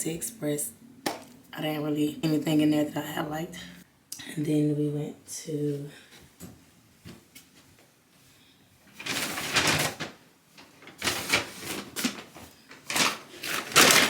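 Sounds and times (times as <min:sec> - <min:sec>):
rustling and handling noises: 0:06.2 - 0:14.0.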